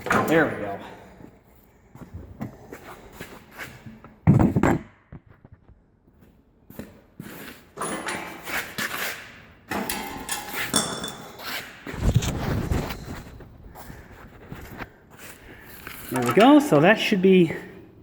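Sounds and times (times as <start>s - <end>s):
metal parts knocking and scraping: 9.7s - 12.4s, 15.9s - 16.8s.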